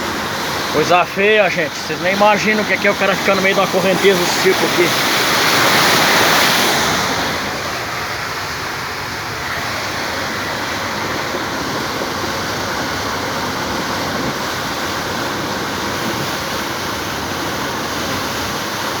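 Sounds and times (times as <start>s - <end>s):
floodwater rushing: 0.0s - 19.0s.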